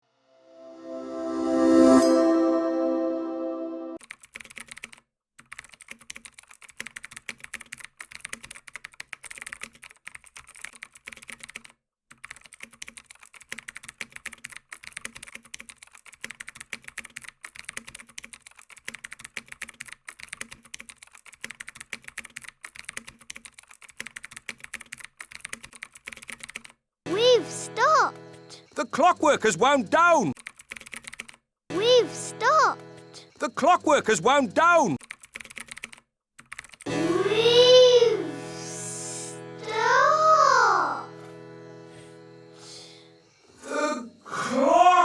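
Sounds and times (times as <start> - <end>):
keyboard typing: 4.0 - 36.9.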